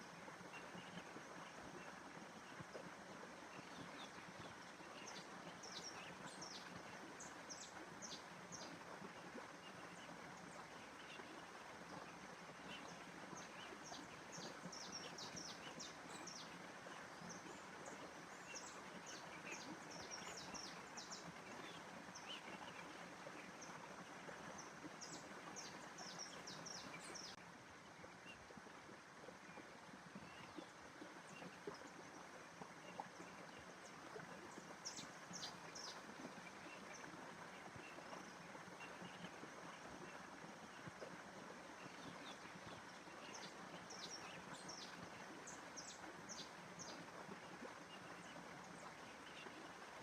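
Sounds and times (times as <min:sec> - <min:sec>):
faint outdoor hiss: 0:00.0 - 0:50.0
small birds chirping: 0:03.5 - 0:08.9, 0:12.5 - 0:27.4.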